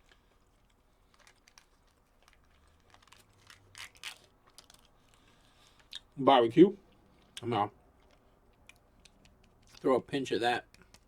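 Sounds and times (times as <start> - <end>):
packaging crinkling and clicking: 0.0 - 5.9, 10.7 - 11.0.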